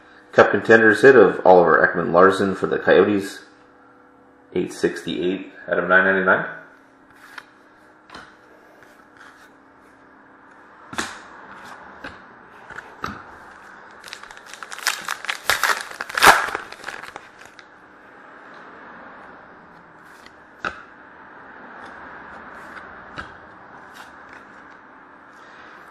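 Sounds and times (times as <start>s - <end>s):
card packaging crinkling: 13.9s - 17.7s.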